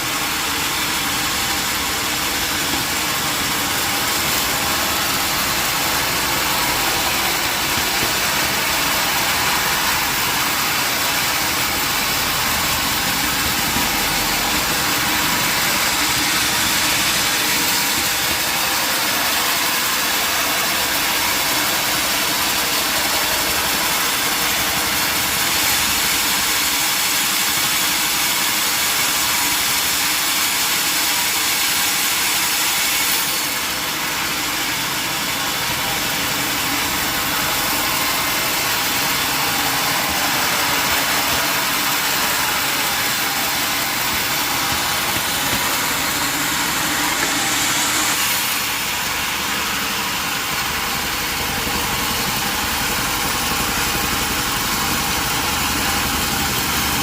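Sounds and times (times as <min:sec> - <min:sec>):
sawmill machinery running: 0:00.0 - 0:57.0.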